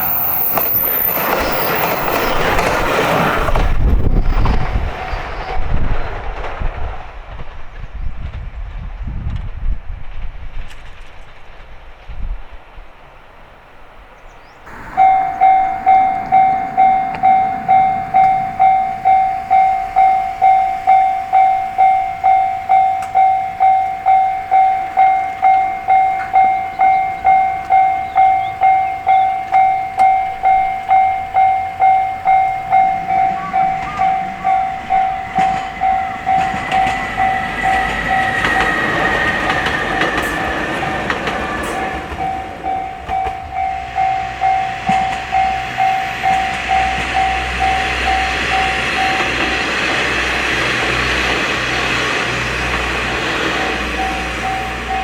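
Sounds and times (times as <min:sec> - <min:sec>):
train passing: 0:00.0 - 0:55.0
level crossing bell ringing: 0:14.7 - 0:49.7, 0:53.6 - 0:55.0.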